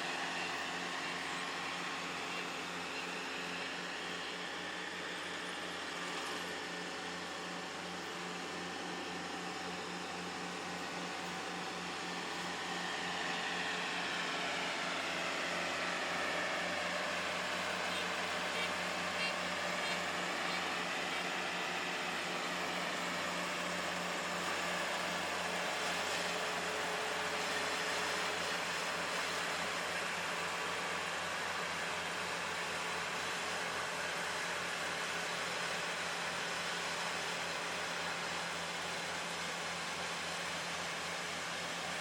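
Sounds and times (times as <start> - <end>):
combine harvester drone: 0.0 - 42.0.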